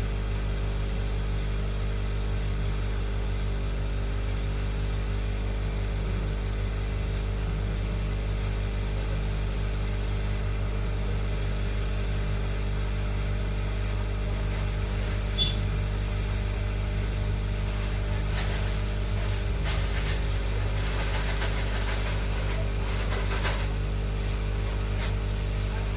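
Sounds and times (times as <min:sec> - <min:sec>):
hot air station blowing: 0:13.9 - 0:25.9.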